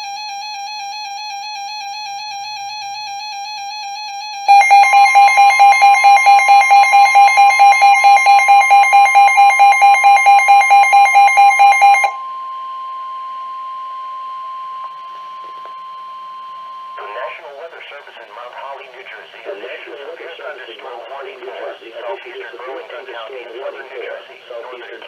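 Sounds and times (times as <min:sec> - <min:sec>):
rapid beeping: 0:04.5 - 0:12.2
weather radio alarm tone: 0:04.5 - 0:25.0.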